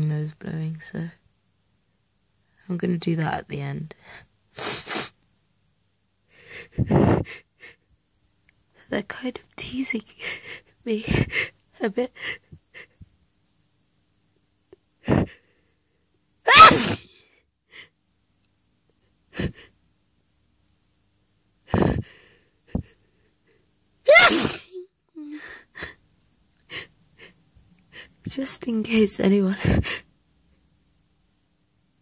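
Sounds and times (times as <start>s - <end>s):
loud sneezes: 16.5s - 17.2s, 24.1s - 24.8s.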